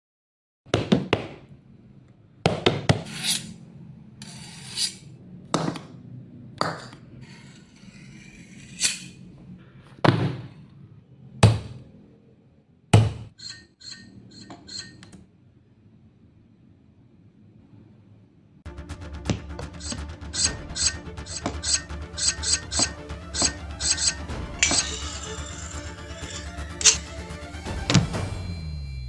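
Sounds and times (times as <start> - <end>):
knocks and thuds: 0.7 - 1.5, 10.0 - 10.5, 11.4 - 11.8, 13.0 - 13.3
scraping and rubbing: 2.9 - 3.6, 4.2 - 5.1, 6.6 - 9.2, 19.6 - 27.2.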